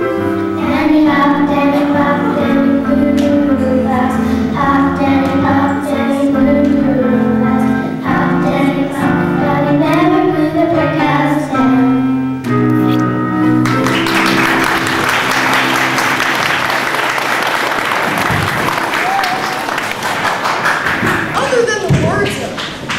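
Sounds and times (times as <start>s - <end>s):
group of voices singing: 0.6s - 12.0s
audience applause: 13.6s - 22.9s.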